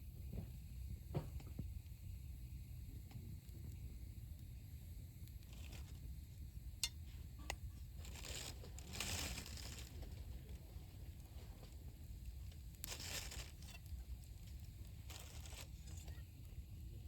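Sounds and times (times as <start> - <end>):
campfire crackling: 5.2 - 16.6
campfire popping: 5.2 - 16.6.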